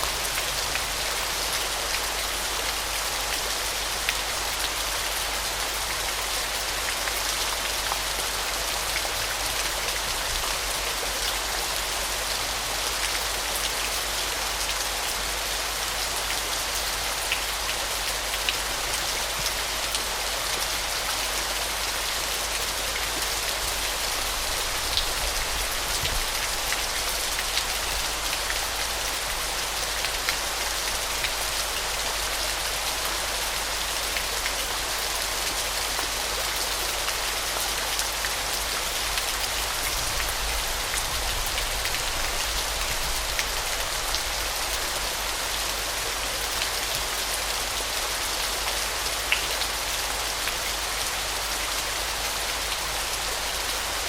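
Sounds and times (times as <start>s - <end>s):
waterfall: 0.0s - 54.0s.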